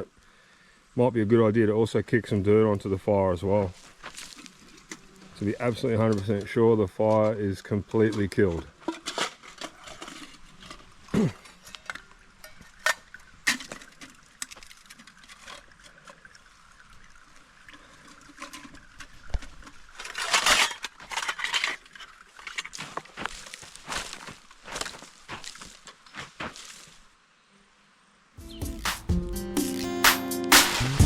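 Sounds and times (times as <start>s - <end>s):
knocks and scuffs: 22.8s - 27.0s.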